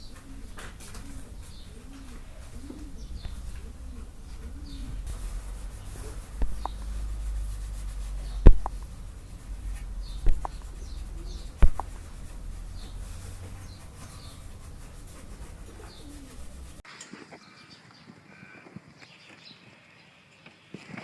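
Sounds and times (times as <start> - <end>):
faint bird chirps: 0.0 - 16.8
low rumble: 0.0 - 16.8
sharp knocks: 0.0 - 16.8.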